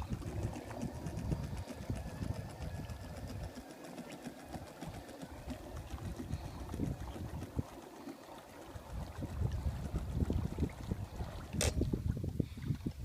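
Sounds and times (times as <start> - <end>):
wind rumble on microphone: 0.0 - 3.5, 5.6 - 7.7, 8.7 - 13.0.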